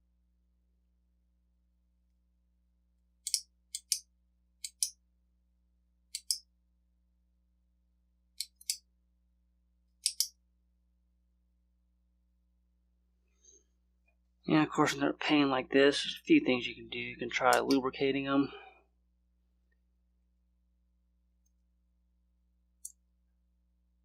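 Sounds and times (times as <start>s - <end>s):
metallic clicks in a lock: 3.2s - 4.0s, 4.6s - 4.9s, 6.2s - 6.4s, 10.0s - 10.3s.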